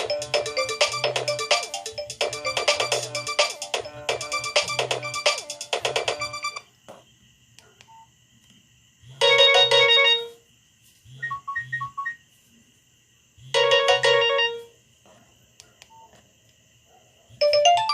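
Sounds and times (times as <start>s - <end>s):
mobile phone ringtone: 0.0s - 6.6s, 9.2s - 10.4s, 13.6s - 14.7s, 17.4s - 17.9s.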